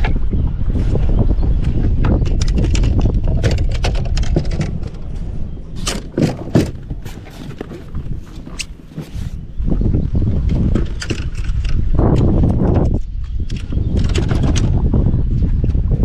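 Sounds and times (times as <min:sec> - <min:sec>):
irregular knocks and clicks: 0:02.0 - 0:05.0.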